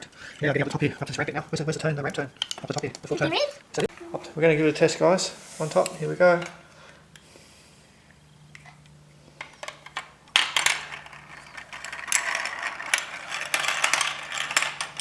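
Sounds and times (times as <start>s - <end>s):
marbles rattling down plastic track: 10.3s - 15.0s.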